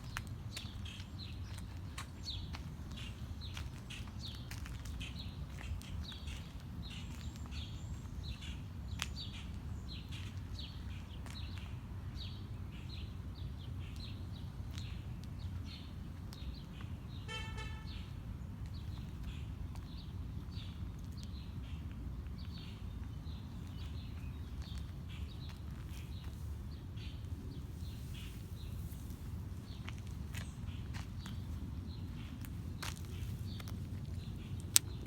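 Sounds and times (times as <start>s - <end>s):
bird chirping: 17.2s - 18.1s
vehicle horn honk: 17.3s - 18.1s.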